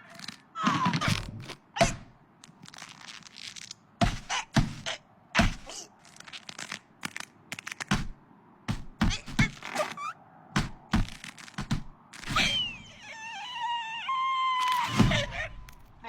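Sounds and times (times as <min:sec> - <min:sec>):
cartoon thunks and knocks: 0:04.0 - 0:05.8, 0:07.9 - 0:12.7.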